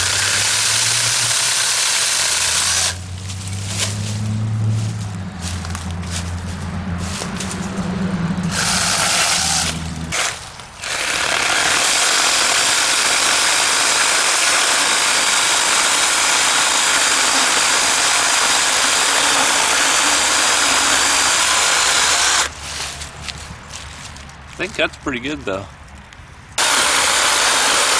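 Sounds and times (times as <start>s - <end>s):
mini chainsaw cutting wood: 0.0s - 4.1s, 8.5s - 22.6s, 26.6s - 27.9s.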